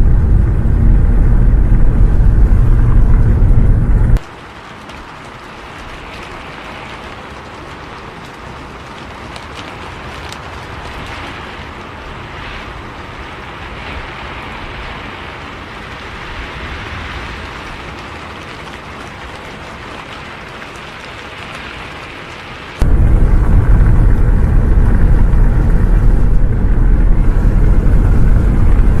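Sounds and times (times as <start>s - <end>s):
bus ride rumble: 0.0s - 4.2s, 22.8s - 29.0s
steady rain: 0.0s - 29.0s.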